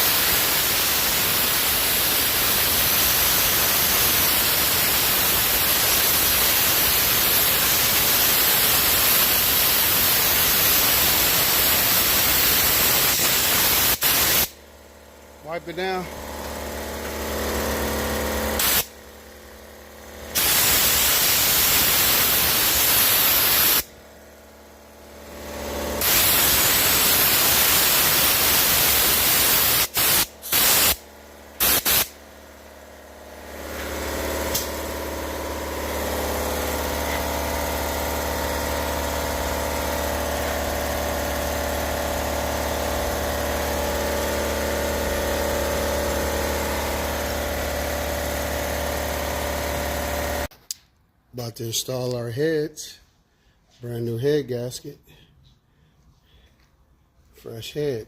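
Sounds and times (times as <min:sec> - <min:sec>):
hissing spray bursts: 0:00.0 - 0:14.6, 0:15.8 - 0:19.0, 0:20.3 - 0:23.9, 0:25.4 - 0:32.2
steady machine hum: 0:23.8 - 0:27.1, 0:29.8 - 0:50.5.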